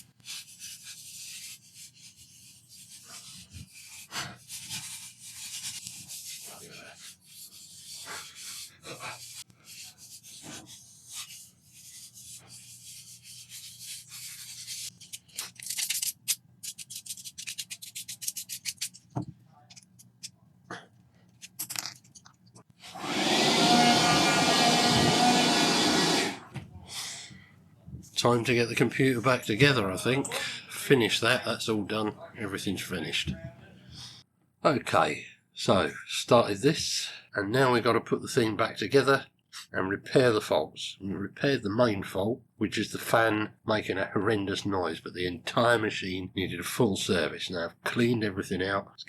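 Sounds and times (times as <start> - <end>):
brush scrubbing plastic: 0.0 - 19.1, 22.9 - 26.4
electric motor with fan whine: 22.8 - 26.5.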